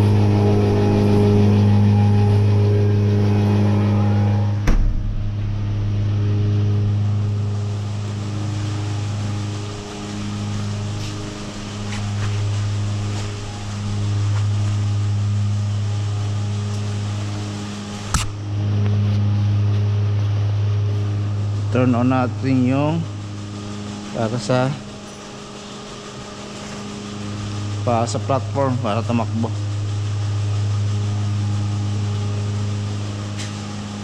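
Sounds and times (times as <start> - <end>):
loud machinery hum: 0.0 - 34.0
sharp knocks: 4.6 - 5.5.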